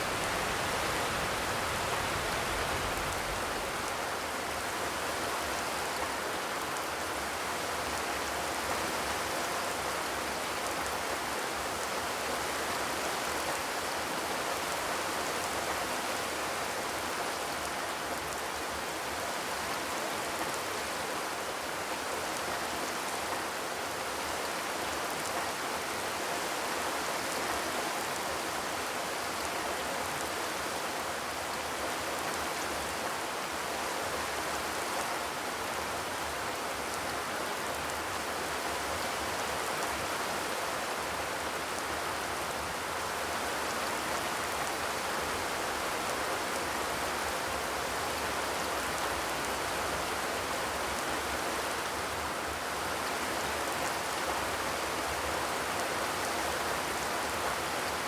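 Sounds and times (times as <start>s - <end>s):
rain on a metal roof: 0.0s - 58.0s.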